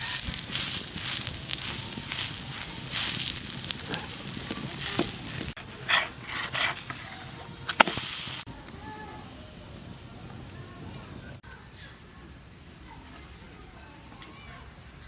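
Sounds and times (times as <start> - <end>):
food sizzling: 0.0 - 8.6
sharp crackles: 0.0 - 8.8.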